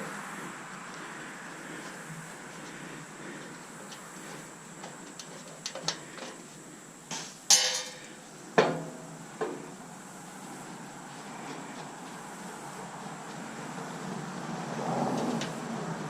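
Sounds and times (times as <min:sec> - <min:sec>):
metal parts clinking: 0:07.5 - 0:08.1
sharp ringing metal clanks: 0:07.5 - 0:09.2.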